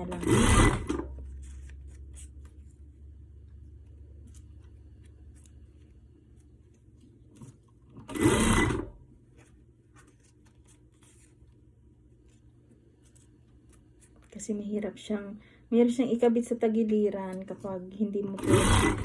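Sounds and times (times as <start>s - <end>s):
sewing machine stitching: 0.0s - 1.3s, 7.9s - 9.0s, 18.3s - 19.0s.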